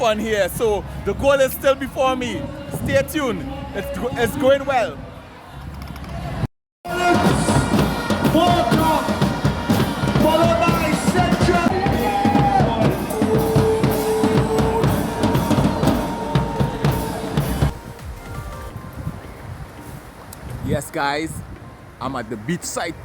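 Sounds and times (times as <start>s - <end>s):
music with drum beat: 6.9s - 18.8s.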